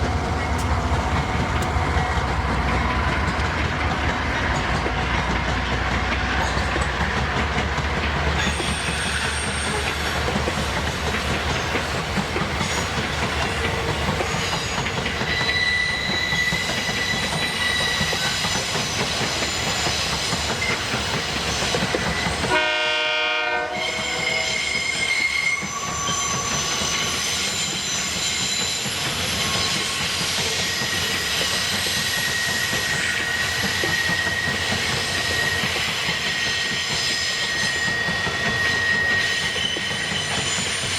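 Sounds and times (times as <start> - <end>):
train wagons rumbling over rails: 0.0 - 40.9
high-pitched wheel squeal: 8.4 - 10.1, 14.1 - 20.9, 23.7 - 40.9.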